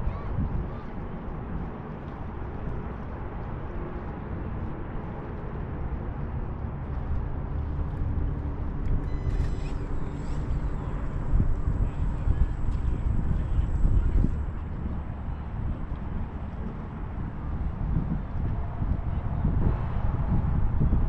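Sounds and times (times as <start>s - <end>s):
wind buffeting microphone: 0.0s - 21.0s
thin high whine: 8.9s - 14.6s.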